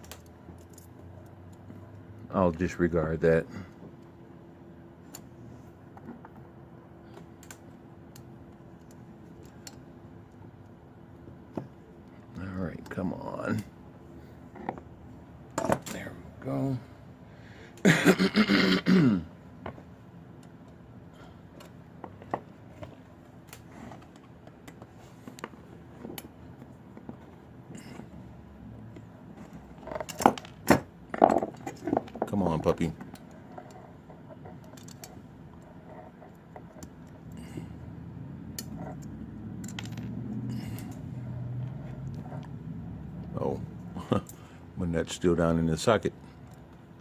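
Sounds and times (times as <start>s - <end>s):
low steady hum: 0.0s - 47.0s
metal tools clicking and clinking: 33.0s - 35.2s, 38.5s - 41.0s.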